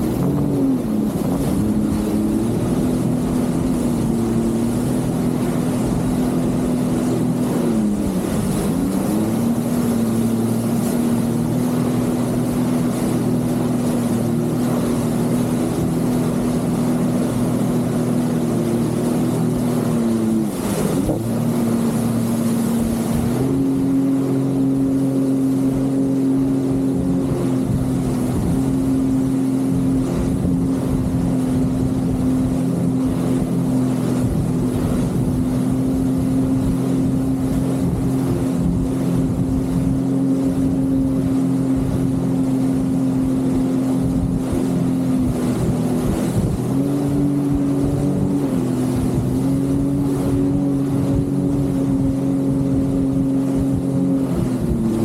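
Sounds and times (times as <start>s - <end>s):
jet ski engine running: 0.0s - 55.0s.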